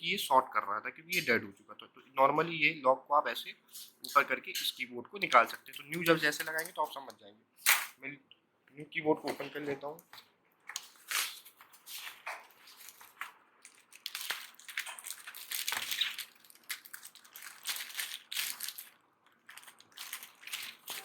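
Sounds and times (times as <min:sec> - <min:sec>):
plastic packaging crinkling: 0:10.2 - 0:21.0.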